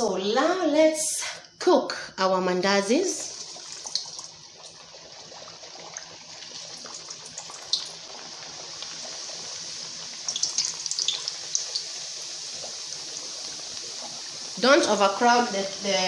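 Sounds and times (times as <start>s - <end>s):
hot oil sizzling: 2.8s - 16.0s
oil crackles and pops: 3.4s - 15.9s.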